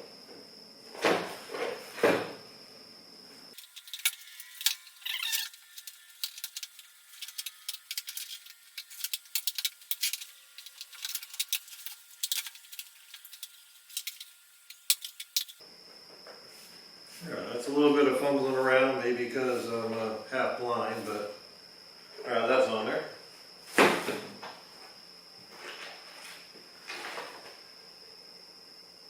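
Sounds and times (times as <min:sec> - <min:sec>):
metal fittings clicking and rattling: 0:03.6 - 0:15.6.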